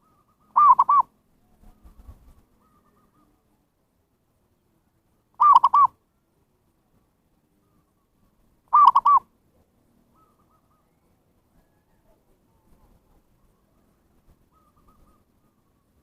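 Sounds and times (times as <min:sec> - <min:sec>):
dove cooing: 0:00.0 - 0:01.1, 0:05.4 - 0:05.9, 0:08.7 - 0:09.2, 0:10.1 - 0:11.0, 0:14.5 - 0:15.9.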